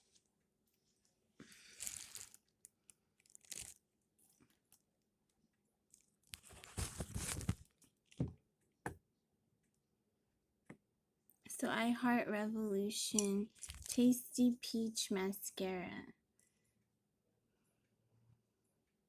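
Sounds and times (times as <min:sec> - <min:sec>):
packaging crinkling and tearing: 0:01.4 - 0:03.9, 0:05.9 - 0:07.8, 0:13.2 - 0:14.0.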